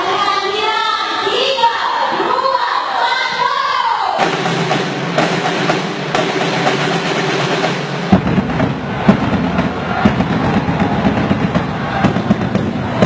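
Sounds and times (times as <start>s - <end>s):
loud crowd din: 0.0s - 13.0s
drums beaten hard: 4.2s - 13.0s.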